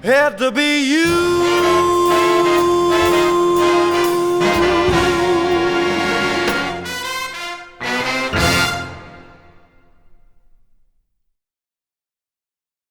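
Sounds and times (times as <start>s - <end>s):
big band brass chord: 1.0s - 10.2s.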